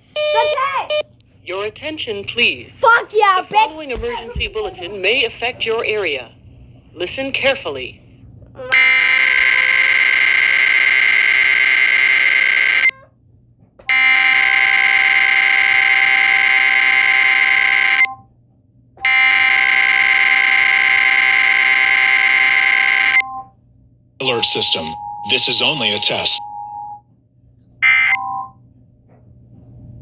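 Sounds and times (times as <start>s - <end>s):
screeching digital data tones: 24.2s - 26.5s.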